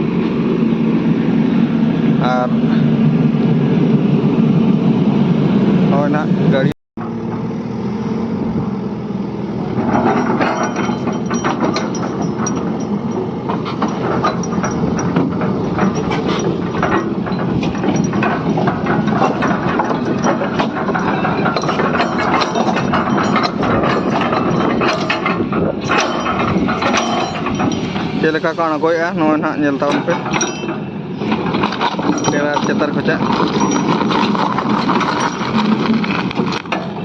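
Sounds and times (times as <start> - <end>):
excavator engine running: 0.0 - 37.0
metallic clattering and clanking: 9.5 - 37.0.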